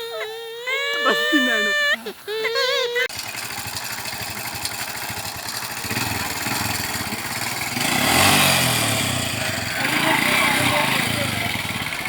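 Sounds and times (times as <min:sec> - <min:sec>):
engine revving: 0:03.1 - 0:12.0.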